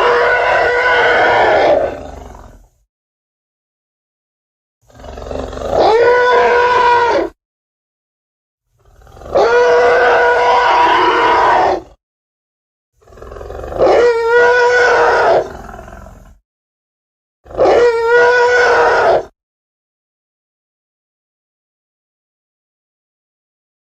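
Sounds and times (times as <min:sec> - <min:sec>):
dinosaur roaring calls: 0:00.0 - 0:02.8, 0:04.9 - 0:07.4, 0:08.8 - 0:12.0, 0:13.0 - 0:16.4, 0:17.5 - 0:19.3.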